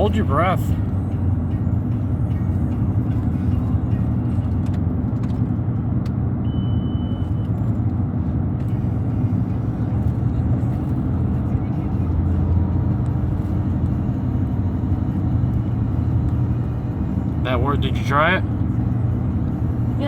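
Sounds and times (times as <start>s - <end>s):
car road and engine noise: 0.0s - 20.0s
short high beep: 6.4s - 7.5s.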